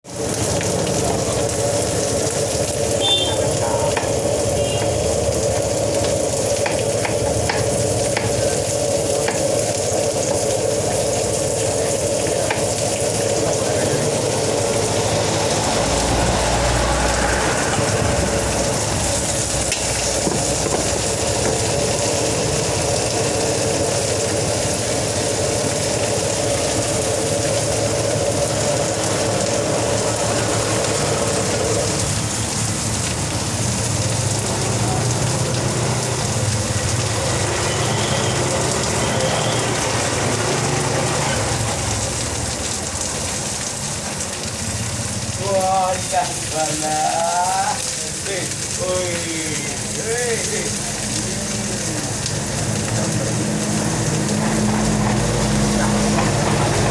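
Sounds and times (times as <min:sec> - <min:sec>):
rice sizzling in a wok: 0:00.1 - 0:56.9.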